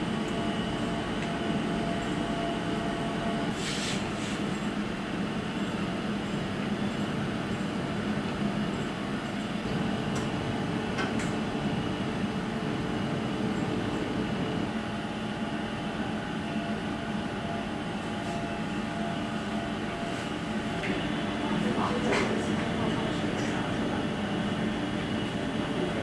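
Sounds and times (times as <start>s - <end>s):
machine hum and rumble: 4.2s - 14.8s.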